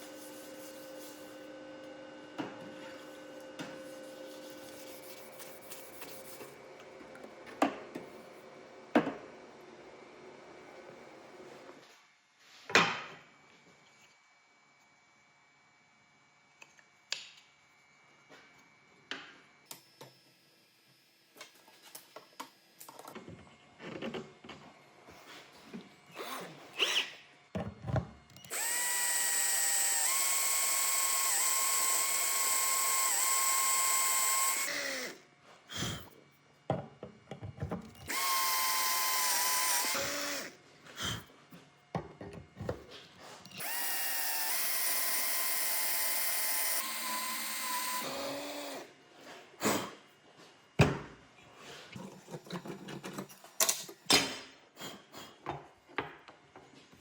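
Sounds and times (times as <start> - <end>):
electric drill motor whining: 26.2 - 27.2, 28.4 - 35.2, 38.0 - 41.2, 43.5 - 48.9.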